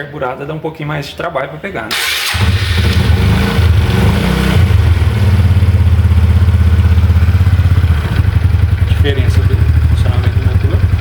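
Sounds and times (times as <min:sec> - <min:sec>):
motorcycle engine idling: 0:04.6 - 0:11.0.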